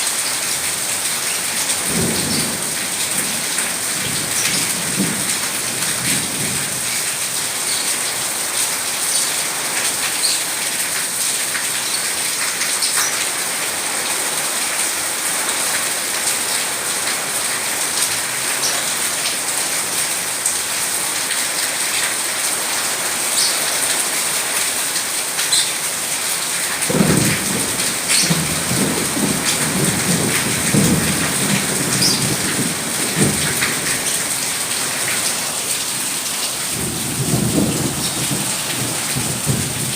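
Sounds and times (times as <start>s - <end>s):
steady rain falling: 0.0s - 39.9s
low rumble of thunder: 26.8s - 34.3s, 36.7s - 39.9s.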